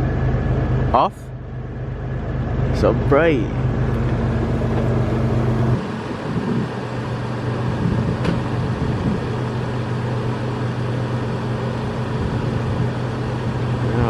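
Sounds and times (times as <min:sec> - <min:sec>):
car engine idling: 0:00.0 - 0:14.0.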